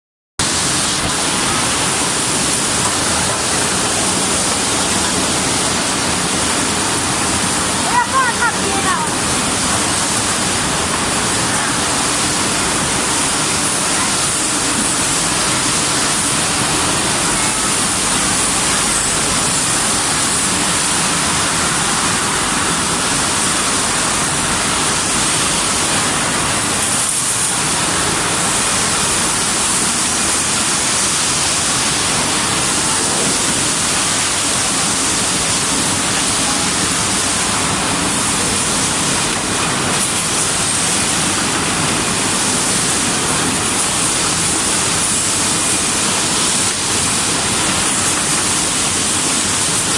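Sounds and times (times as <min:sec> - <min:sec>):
dishwashing machine running: 0:00.4 - 0:49.9
water spray rushing: 0:00.4 - 0:49.9.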